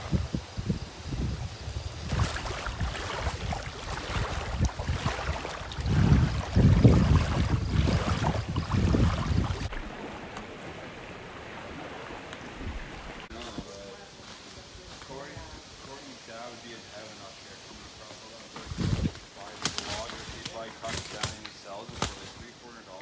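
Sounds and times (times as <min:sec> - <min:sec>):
wind buffeting microphone: 0:00.0 - 0:09.7, 0:18.6 - 0:19.3
steady outdoor hiss: 0:00.0 - 0:23.0.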